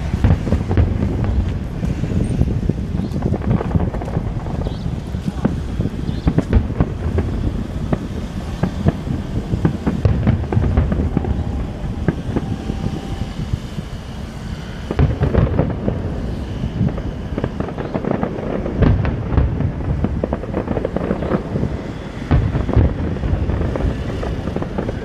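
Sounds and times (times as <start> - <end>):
fireworks bangs and crackles: 0.0 - 25.0
low rumble: 0.0 - 25.0.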